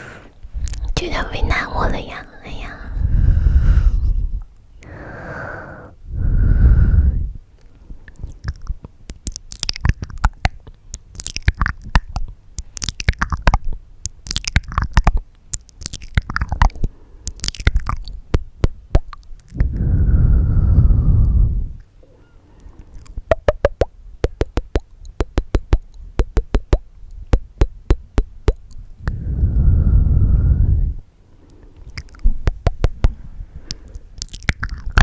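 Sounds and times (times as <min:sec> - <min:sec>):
heavy breaths into microphone: 0:00.0 - 0:00.6, 0:02.1 - 0:08.0
tongue clicks and lip smacks: 0:00.6 - 0:01.0, 0:07.6 - 0:19.8, 0:22.6 - 0:29.2, 0:31.5 - 0:35.0.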